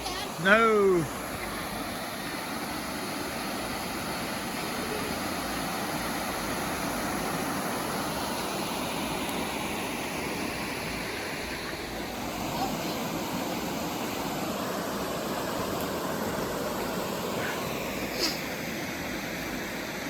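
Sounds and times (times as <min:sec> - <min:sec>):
waterfall rushing into pool: 0:00.0 - 0:20.0.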